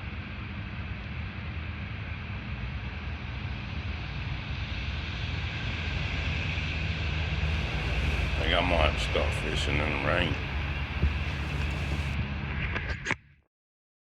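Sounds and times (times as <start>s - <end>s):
boat motor running: 7.5s - 12.2s
wind noise on microphone: 7.5s - 12.2s.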